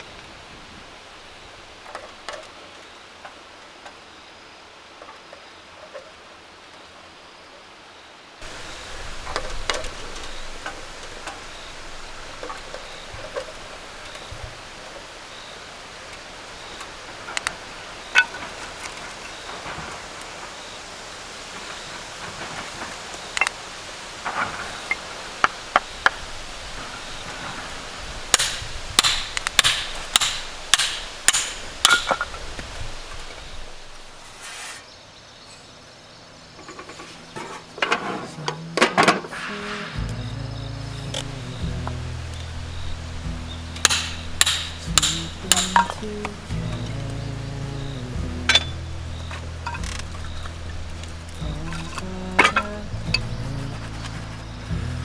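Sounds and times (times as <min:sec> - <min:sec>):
fire crackling and snapping: 0:08.4 - 0:34.3, 0:39.5 - 0:55.0
wood stove fire hissing: 0:08.4 - 0:55.0.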